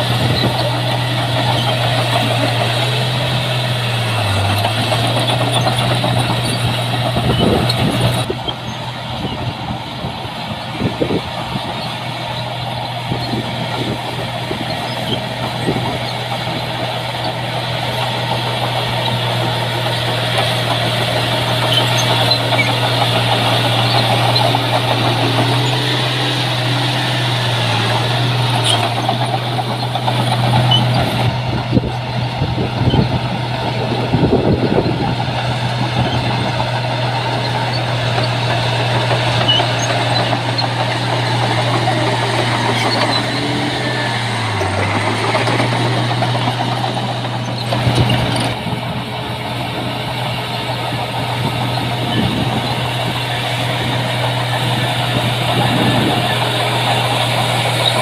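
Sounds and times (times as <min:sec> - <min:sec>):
diesel engine running: 0:00.0 - 0:58.0
knocks and rattles: 0:34.6 - 0:58.0.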